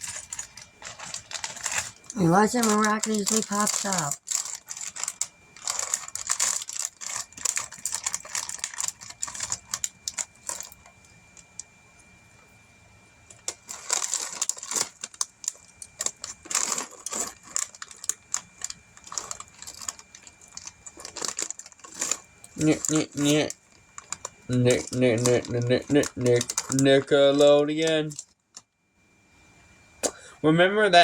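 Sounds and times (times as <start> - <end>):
plastic bricks clattering: 13.5 - 26.9.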